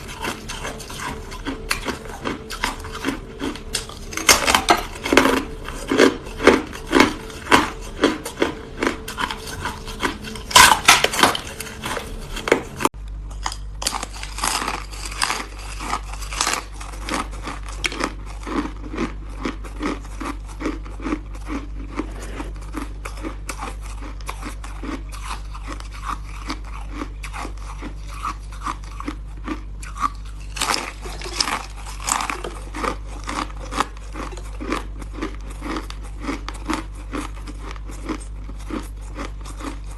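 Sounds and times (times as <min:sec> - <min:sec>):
crunching of ice being chewed: 0:00.0 - 0:39.9
low steady hum: 0:00.0 - 0:39.9.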